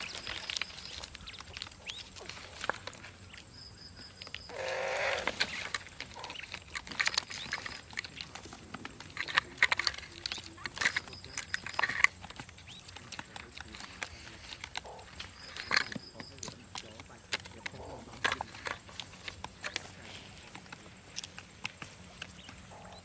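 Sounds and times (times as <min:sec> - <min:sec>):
short animal call: 0:04.5 - 0:05.4.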